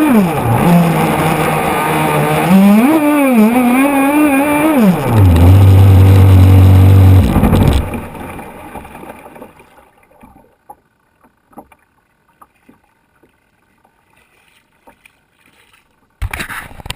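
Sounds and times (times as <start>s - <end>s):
boat motor idling: 0.0s - 9.7s.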